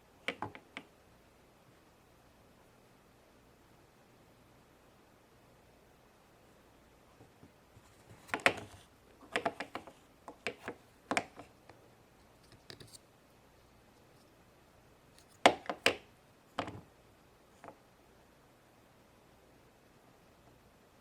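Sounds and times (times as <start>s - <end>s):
plastic moulds clicking on tabletop: 8.2s - 11.5s.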